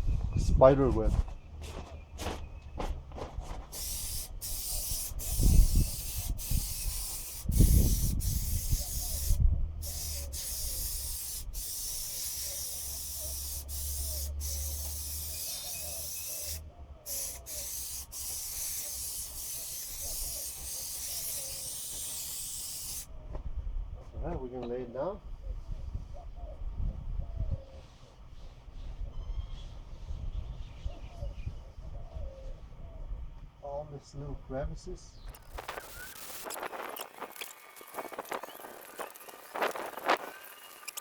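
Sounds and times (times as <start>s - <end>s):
aerosol can spraying: 3.7s - 23.1s, 35.4s - 40.3s.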